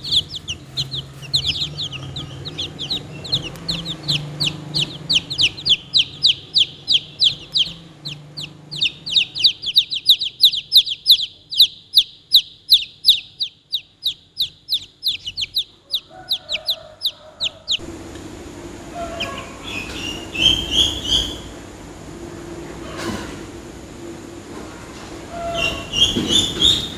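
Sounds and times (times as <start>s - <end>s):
faint high calls: 0.0s - 17.8s
chicks peeping: 0.0s - 17.9s, 18.9s - 21.5s
steady low hum: 0.0s - 26.9s.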